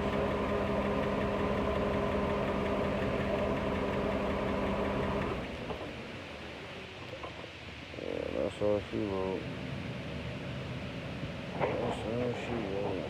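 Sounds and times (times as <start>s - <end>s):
car engine idling: 0.0s - 7.0s
alternator whine: 0.0s - 13.0s.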